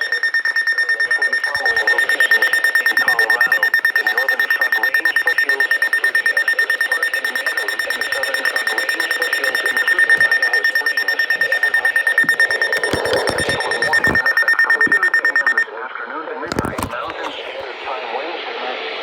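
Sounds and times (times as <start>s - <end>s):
alarm tone pulsing: 0.0s - 15.7s.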